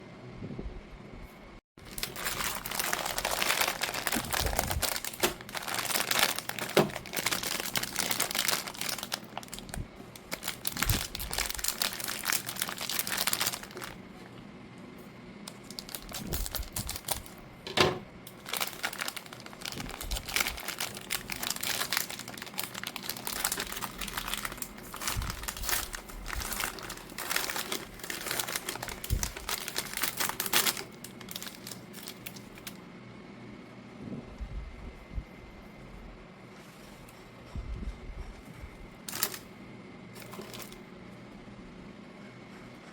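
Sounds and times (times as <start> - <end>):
snack packaging crinkling: 1.8 - 14.0, 15.5 - 17.4, 18.3 - 32.8, 39.1 - 39.5, 40.2 - 40.8.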